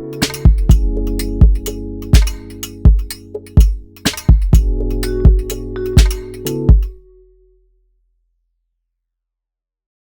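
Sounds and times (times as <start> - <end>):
drum machine percussion and hi-hats: 0.0 - 7.0
hip-hop beat with booming kick drum: 0.0 - 7.0
sustained synth chords: 0.0 - 7.4.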